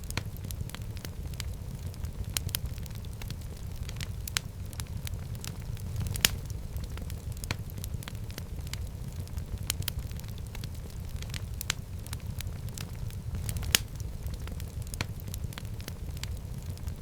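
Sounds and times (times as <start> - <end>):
fire crackling and popping: 0.0 - 17.0.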